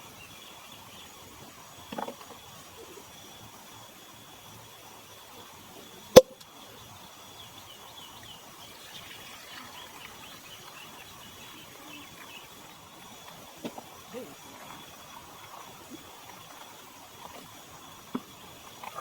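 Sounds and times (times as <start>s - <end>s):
high insect tone: 0.0s - 19.0s
faint bird chirps: 6.6s - 13.3s.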